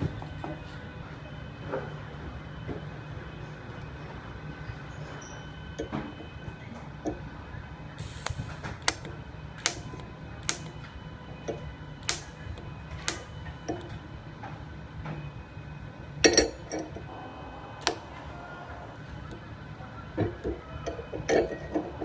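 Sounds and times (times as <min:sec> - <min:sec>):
steady low hum: 0:00.0 - 0:22.0
welder snapping clicks: 0:08.0 - 0:10.8, 0:12.0 - 0:13.3
welding arc crackling: 0:08.0 - 0:10.8, 0:12.0 - 0:13.3, 0:17.4 - 0:19.4.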